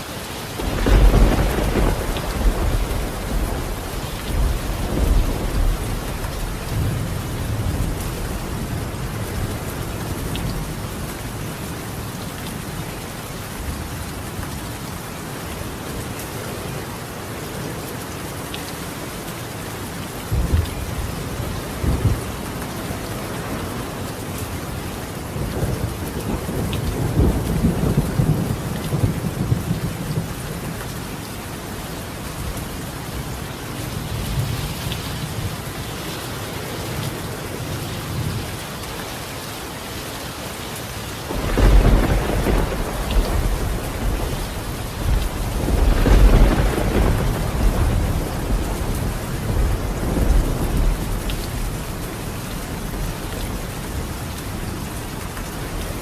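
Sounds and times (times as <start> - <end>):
rain falling on a roof: 0.0 - 56.0
loud thunderclap: 0.6 - 8.0, 41.3 - 51.7
thunder rumbling: 0.6 - 10.7, 41.3 - 54.6.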